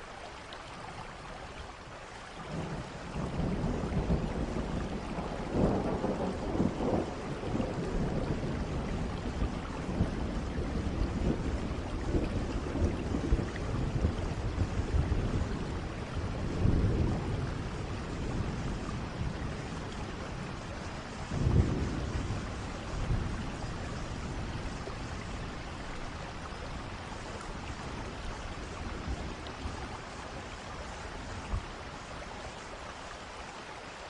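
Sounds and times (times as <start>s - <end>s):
steady rain falling: 0.0s - 34.0s
distant thunder rumbles: 2.5s - 32.6s.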